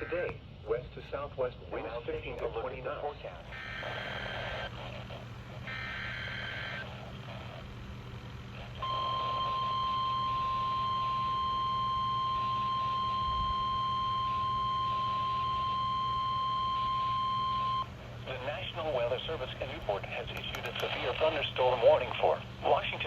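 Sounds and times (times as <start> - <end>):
faint steady hum: 0.0 - 23.0
steady high alarm tone: 3.5 - 4.7, 5.6 - 6.9, 8.8 - 18.0.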